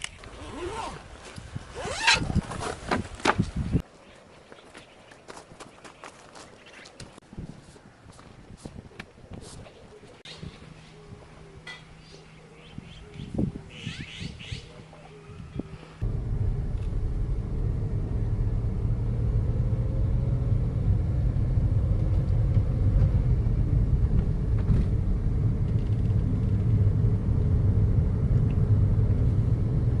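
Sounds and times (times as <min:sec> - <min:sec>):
loud low rumble: 0:16.0 - 0:30.0.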